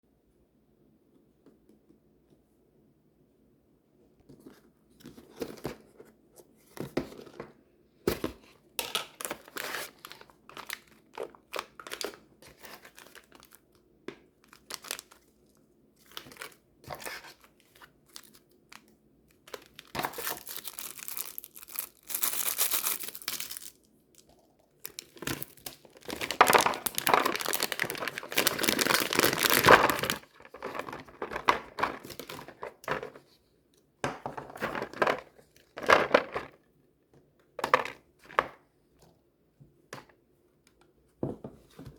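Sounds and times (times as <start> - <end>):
food packaging crinkling: 8.8 - 13.8, 14.4 - 33.2.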